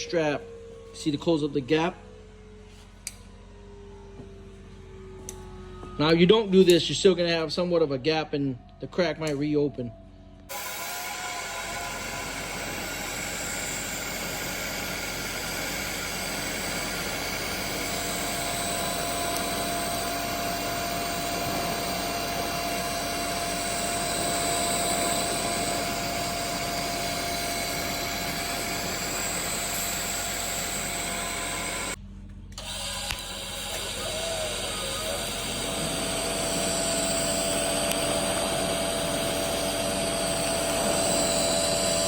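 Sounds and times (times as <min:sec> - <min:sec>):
welding arc hissing and humming: 0:10.5 - 0:32.0, 0:32.8 - 0:42.0.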